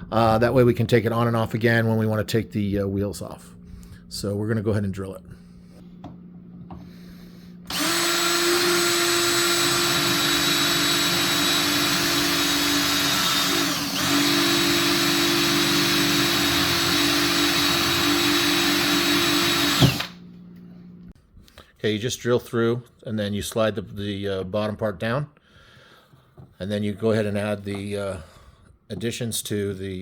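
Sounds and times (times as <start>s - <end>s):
drill click: 7.7s - 20.2s
power drill drilling plastic: 7.7s - 20.2s.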